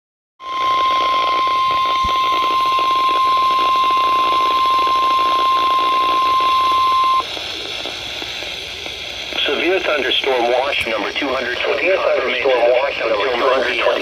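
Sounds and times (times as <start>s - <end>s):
steady alarm beep: 0.4s - 7.2s
radio static hiss: 0.4s - 14.0s.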